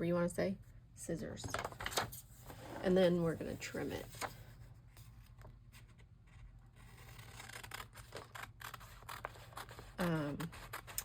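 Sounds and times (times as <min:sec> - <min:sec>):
scissors snipping paper: 0:07.0 - 0:11.0.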